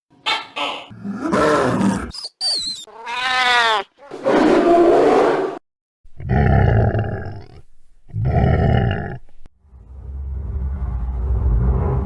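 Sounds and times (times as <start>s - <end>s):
roaring: 0.9s - 2.2s, 6.2s - 9.3s.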